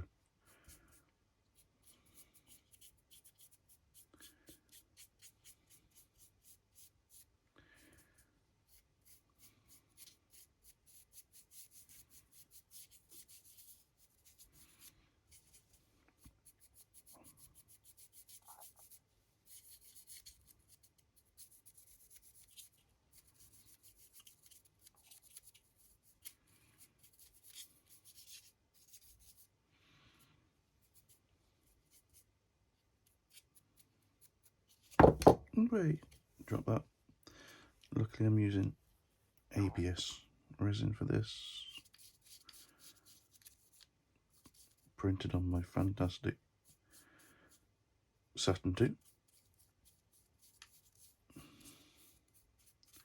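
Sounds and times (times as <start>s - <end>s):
paintbrush scratching and dabbing: 0.5s - 29.6s, 30.8s - 35.0s, 41.4s - 45.0s, 46.6s - 47.6s, 48.9s - 53.0s.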